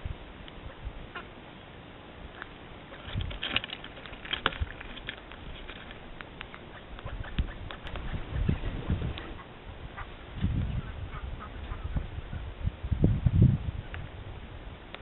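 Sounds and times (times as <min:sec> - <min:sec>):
birds tapping and scratching: 0:02.3 - 0:09.5.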